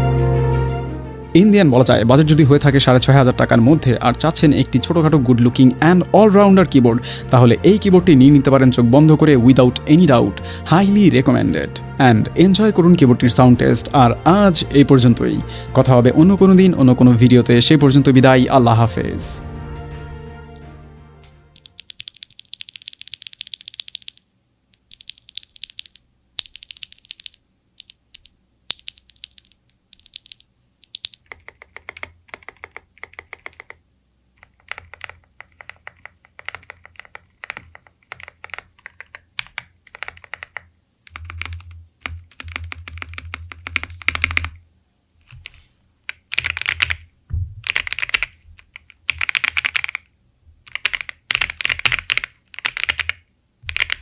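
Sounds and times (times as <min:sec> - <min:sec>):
mechanical keyboard typing: 0:21.5 - 0:24.2, 0:24.8 - 0:33.8, 0:34.4 - 0:44.6, 0:45.3 - 0:54.0.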